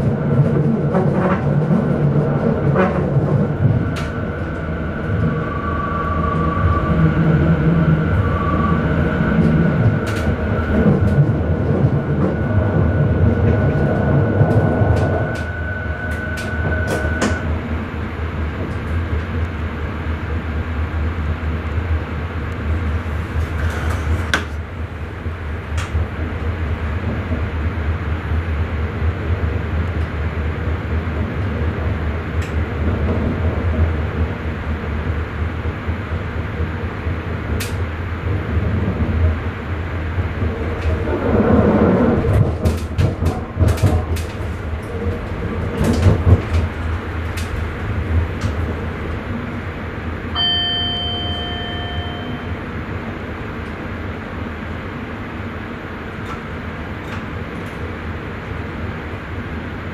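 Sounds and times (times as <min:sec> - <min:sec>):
train wheels rumbling on track: 0:00.0 - 0:59.9
high steady whine: 0:02.1 - 0:26.4, 0:46.8 - 0:59.9.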